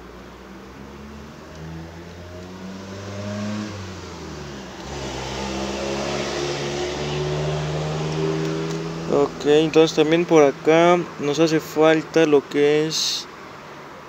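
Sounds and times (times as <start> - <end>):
vehicle engine revving: 0.5 - 11.2.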